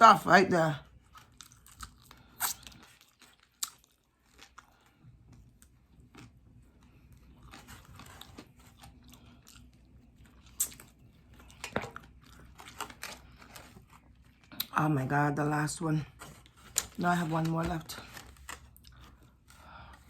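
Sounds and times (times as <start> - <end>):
chewing fried chicken: 0.8 - 14.8, 18.0 - 19.9.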